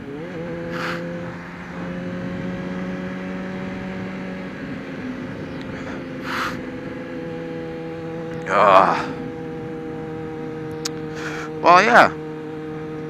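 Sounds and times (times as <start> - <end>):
motorcycle engine running: 0.0 - 13.0
wind rush: 0.6 - 10.5.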